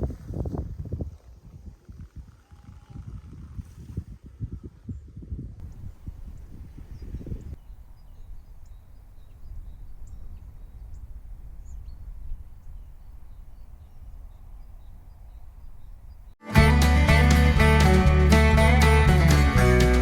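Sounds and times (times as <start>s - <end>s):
low wind rumble: 0.0s - 16.4s
faint bird chirps: 5.7s - 16.4s.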